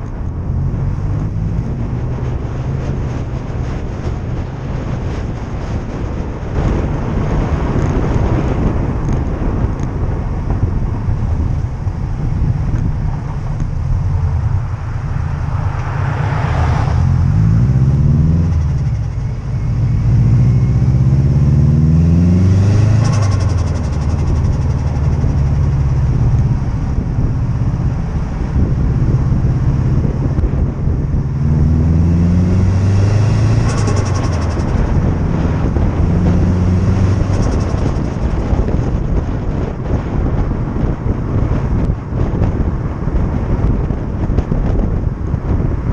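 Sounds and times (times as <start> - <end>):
car engine revving: 0.0 - 5.4, 12.8 - 40.3.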